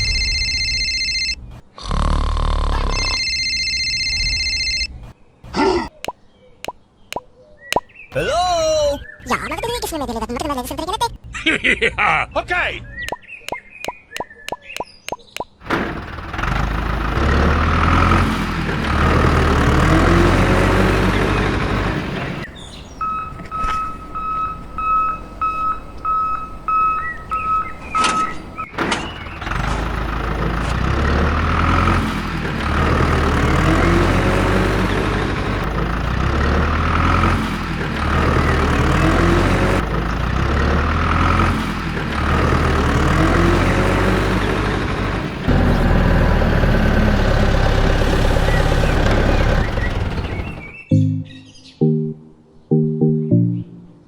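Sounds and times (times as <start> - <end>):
high reversing beeper: 0.0 - 1.0, 22.9 - 28.3
heavy vehicle engine running: 0.0 - 1.6, 15.6 - 50.9.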